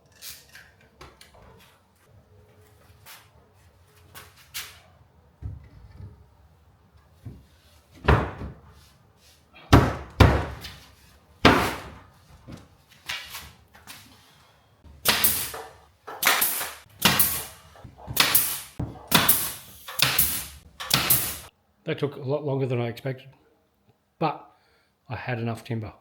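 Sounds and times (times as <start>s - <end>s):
knocks and bangs on timber boards: 7.3s - 8.7s, 9.7s - 10.8s, 11.4s - 12.6s, 15.0s - 21.5s.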